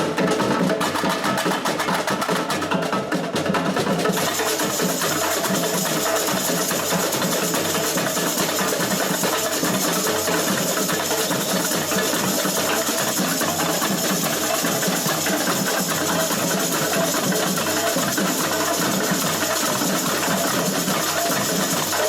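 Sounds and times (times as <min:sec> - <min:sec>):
samba percussion groove: 0:00.0 - 0:22.0.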